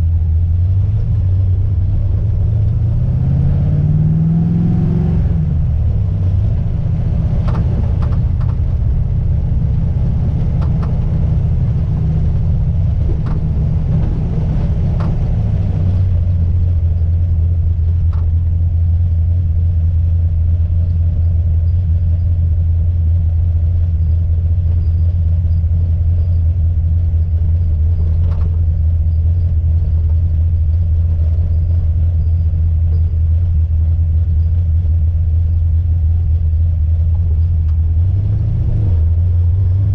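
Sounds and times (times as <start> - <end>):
car engine and road noise: 0.0 - 39.9
sharp clicks from car rear: 7.4 - 8.8, 10.4 - 11.2, 13.0 - 14.2, 14.9 - 15.4, 18.0 - 18.4, 28.0 - 28.6.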